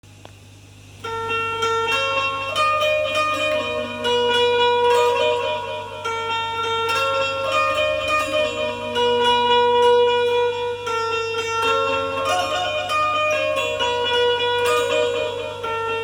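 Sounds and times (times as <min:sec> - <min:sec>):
steady low hum: 0:00.0 - 0:16.0
banjo melody: 0:01.0 - 0:16.0.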